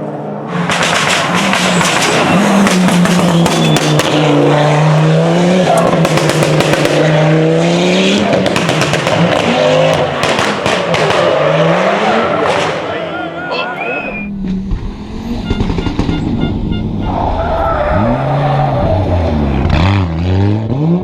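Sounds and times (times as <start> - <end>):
rally car engine at full throttle: 0.0 - 21.0
engine cracks and pops: 0.7 - 4.2, 8.4 - 11.3, 14.4 - 16.4.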